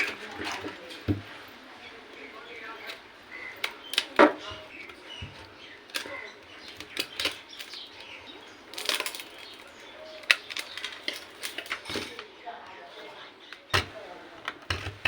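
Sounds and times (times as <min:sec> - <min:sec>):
parts clattering: 0:00.0 - 0:12.3, 0:13.5 - 0:15.0
small tools clicking and tapping: 0:00.0 - 0:12.3, 0:13.5 - 0:15.0.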